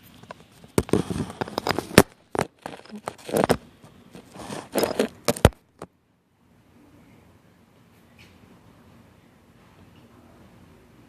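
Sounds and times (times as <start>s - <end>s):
phone being handled: 0.2s - 5.9s.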